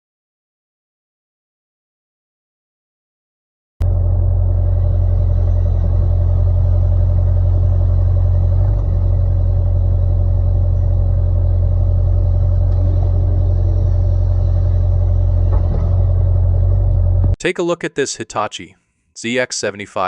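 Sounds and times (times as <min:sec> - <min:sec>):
diesel engine rumbling: 0:03.8 - 0:17.8.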